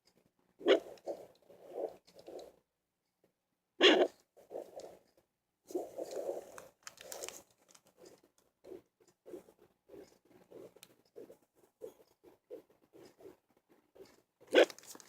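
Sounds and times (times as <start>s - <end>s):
crackling scrape of probe: 5.7s - 15.0s.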